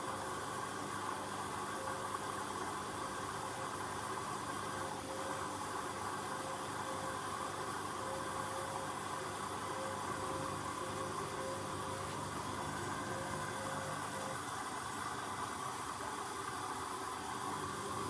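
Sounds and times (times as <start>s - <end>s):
washing machine hissing: 0.0s - 18.0s
faint hum: 6.3s - 14.4s.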